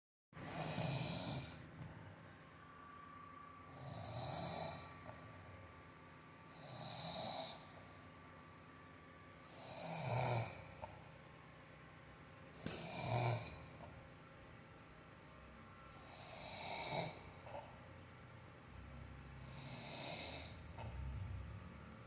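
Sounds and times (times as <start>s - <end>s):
adult snoring: 0.4s - 1.7s, 3.7s - 5.2s, 6.5s - 7.9s, 9.4s - 11.0s, 12.6s - 13.9s, 16.0s - 17.8s, 19.4s - 21.4s.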